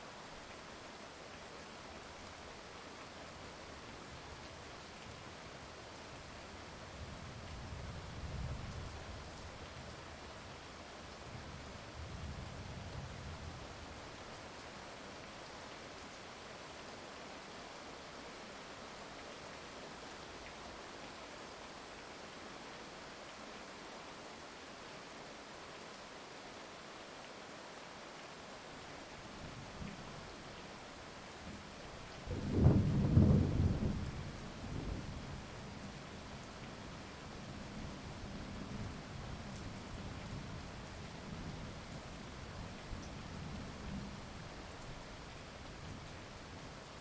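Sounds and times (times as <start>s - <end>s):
heavy rain: 0.0s - 47.0s
distant thunder rumble: 32.3s - 34.4s.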